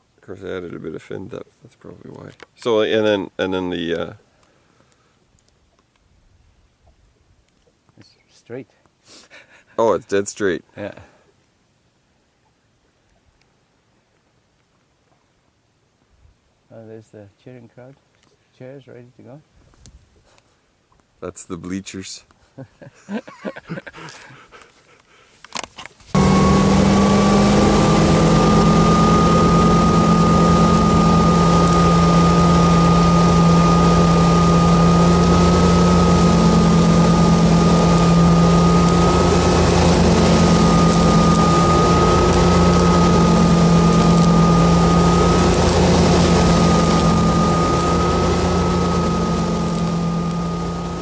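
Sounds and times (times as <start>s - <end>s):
high whine: 26.1s - 51.0s
boat engine running: 26.2s - 51.0s.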